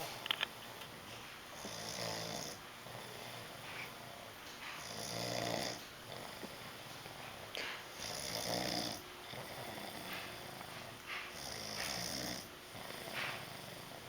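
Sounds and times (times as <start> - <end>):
man snoring: 1.6 - 3.6, 4.8 - 6.6, 8.0 - 10.6, 11.4 - 14.0.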